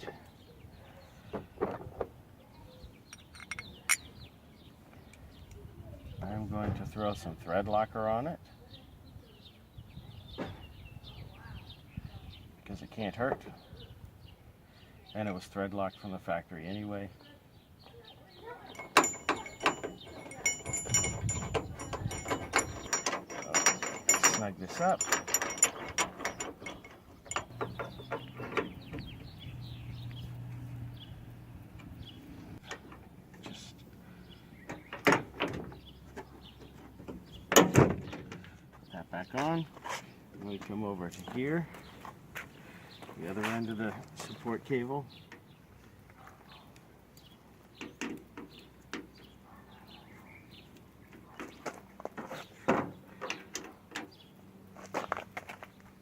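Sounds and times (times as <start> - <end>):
tools clicking and knocking: 3.1 - 4.1, 18.7 - 29.3.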